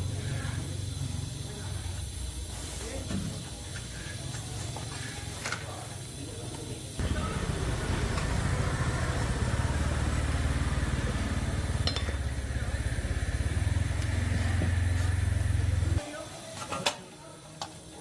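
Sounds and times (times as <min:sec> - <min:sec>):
motor rumbling: 0:07.0 - 0:16.0.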